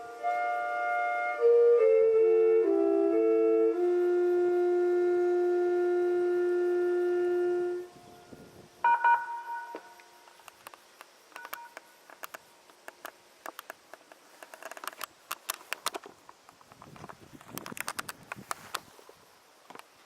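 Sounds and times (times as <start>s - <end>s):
two-note electronic tone: 3.9s - 10.1s
loudspeaker chime melody: 8.9s - 10.0s
faint clicks: 9.9s - 18.9s.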